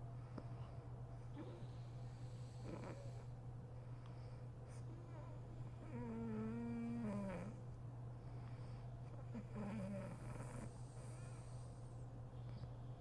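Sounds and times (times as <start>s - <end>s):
steady low hum: 0.0s - 13.0s
woman snoring: 5.9s - 7.6s, 9.4s - 10.7s.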